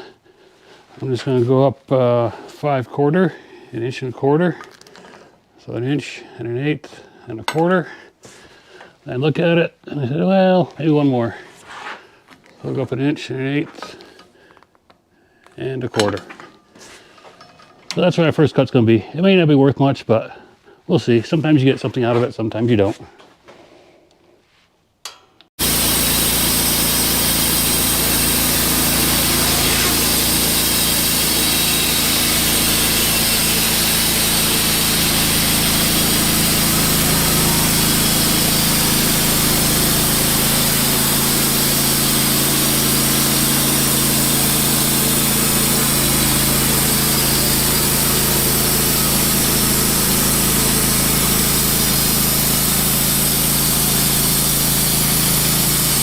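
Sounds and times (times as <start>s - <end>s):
bandsaw mill cutting a log: 25.6s - 56.0s.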